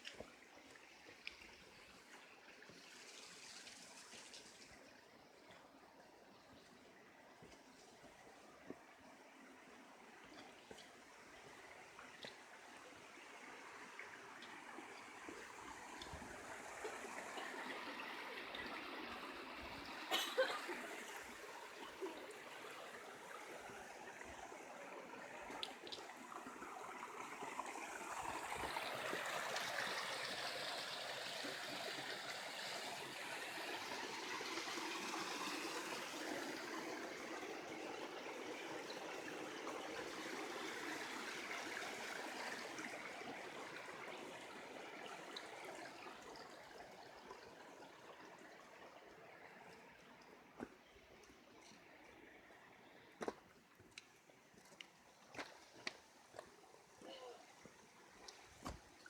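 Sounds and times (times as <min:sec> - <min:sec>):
stream water rushing: 0:10.9 - 0:50.6.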